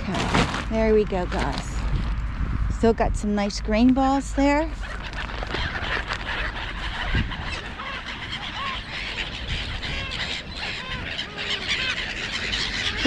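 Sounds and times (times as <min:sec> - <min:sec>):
gulls calling: 0:04.0 - 0:13.0.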